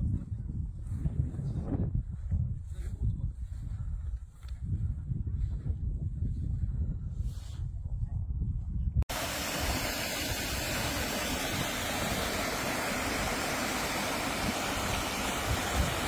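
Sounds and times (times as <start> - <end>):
waterfall rushing: 9.1 - 16.0.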